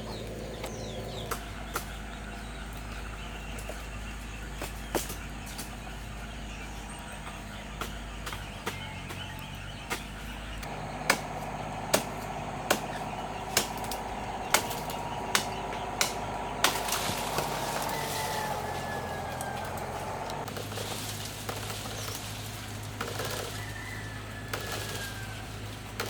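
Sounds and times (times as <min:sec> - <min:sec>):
sharp chopping strikes: 0:07.8 - 0:18.1.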